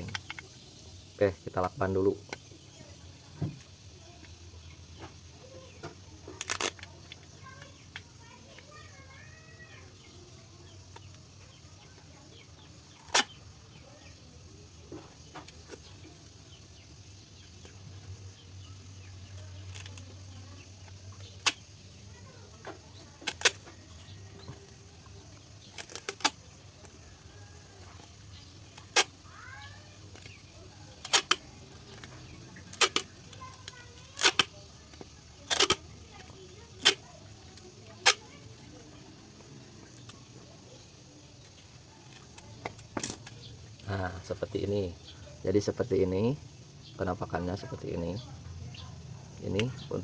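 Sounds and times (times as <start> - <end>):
tin cans clicking and knocking: 19.3 - 40.6.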